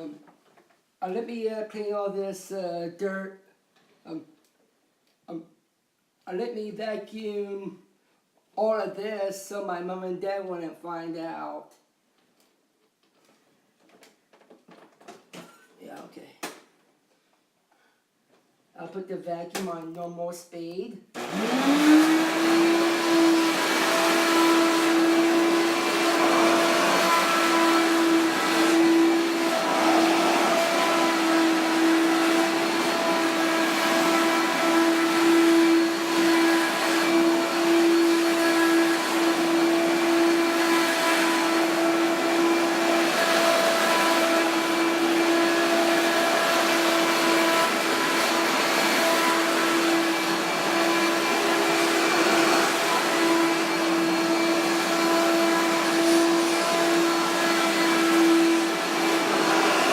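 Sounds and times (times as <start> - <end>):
vacuum cleaner motor hum: 21.2 - 59.9.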